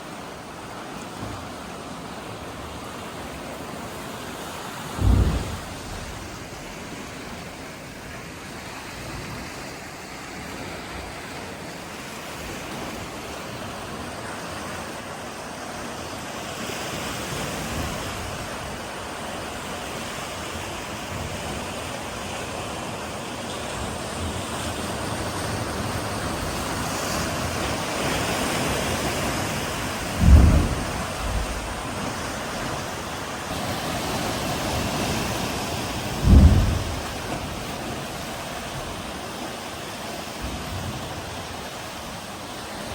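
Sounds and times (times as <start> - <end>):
surf rushing into sea cave: 0.0 - 42.9
deep wave boom in cave: 5.0 - 7.4, 30.1 - 32.2, 36.2 - 37.5.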